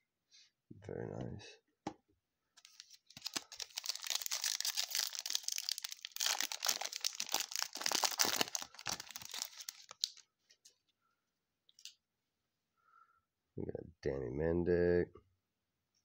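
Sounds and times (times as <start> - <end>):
plastic wrapper tearing and crinkling: 2.6 - 10.2.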